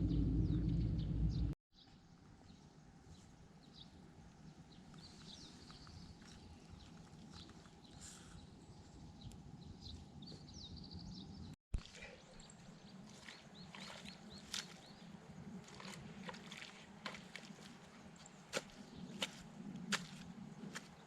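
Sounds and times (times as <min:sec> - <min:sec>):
low outdoor rumble: 0:00.0 - 0:01.6
small birds chirping: 0:00.0 - 0:21.0.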